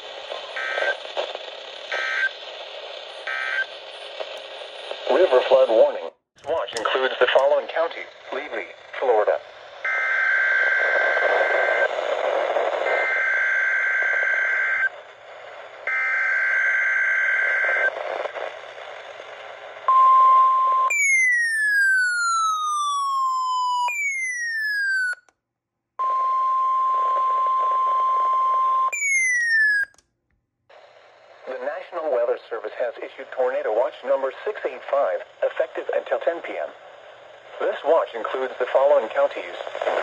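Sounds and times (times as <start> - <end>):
radio static: 0.0 - 19.9, 30.7 - 40.0
warbling data header squeal: 28.9 - 29.9.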